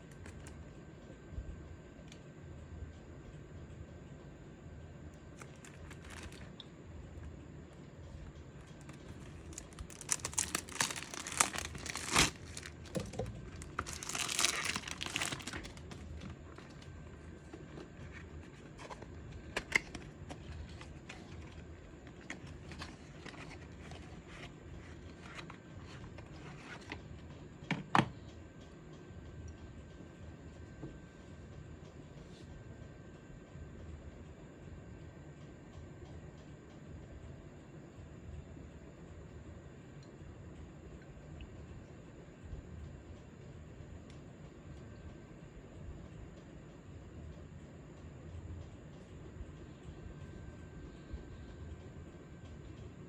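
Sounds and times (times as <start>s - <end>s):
wrapping crinkling and tearing: 5.4s - 6.6s, 8.8s - 16.8s.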